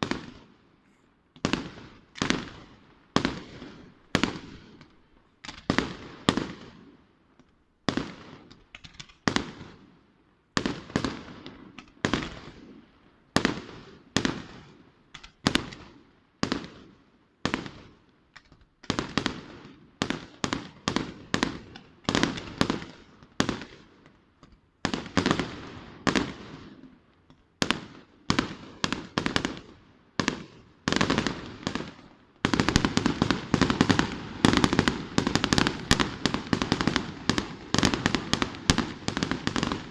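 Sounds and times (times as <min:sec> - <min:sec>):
fireworks bangs: 0:00.0 - 0:07.0, 0:18.8 - 0:24.2, 0:24.8 - 0:39.9.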